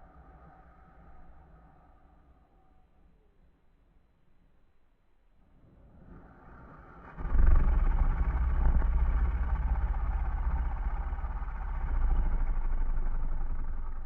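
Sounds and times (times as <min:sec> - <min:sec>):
toy snoring rumble: 0:07.0 - 0:14.0.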